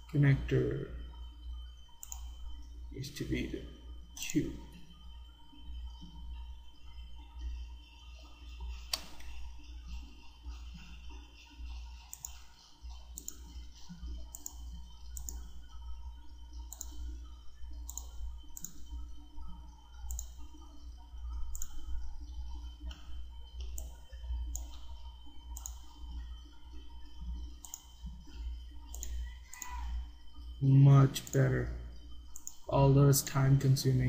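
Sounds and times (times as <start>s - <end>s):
low steady hum: 0.0s - 34.0s
computer mouse clicking: 1.9s - 2.4s, 8.8s - 10.1s, 11.6s - 15.8s, 16.5s - 29.8s, 32.3s - 32.7s.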